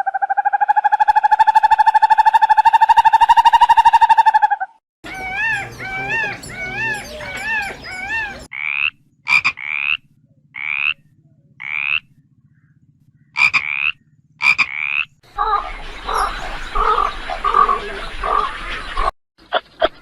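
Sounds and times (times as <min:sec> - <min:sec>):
warbling animal calls: 0:00.0 - 0:20.0
low pulsing drone: 0:05.0 - 0:19.1.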